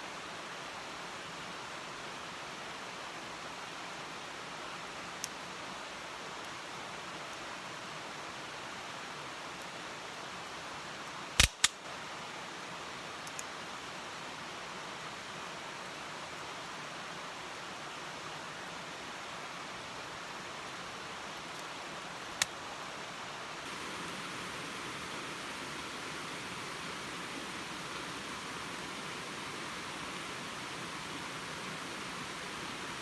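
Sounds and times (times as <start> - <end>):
steady rushing hiss: 0.0 - 33.0
firewood cracking pops: 11.4 - 11.8.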